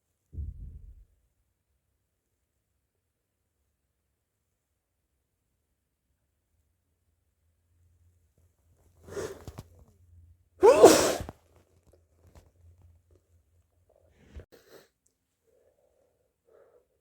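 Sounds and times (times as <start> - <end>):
breathy intake: 10.6 - 11.2
person sneezing with a vocal cry: 10.6 - 11.3.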